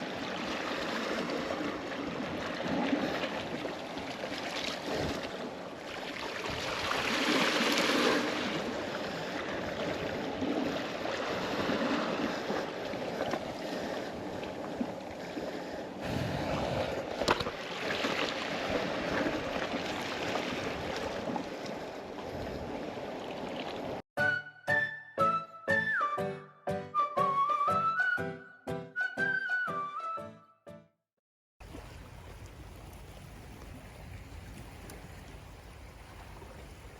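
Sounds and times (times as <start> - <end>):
sea waves splashing: 0.0 - 24.0, 31.6 - 36.9.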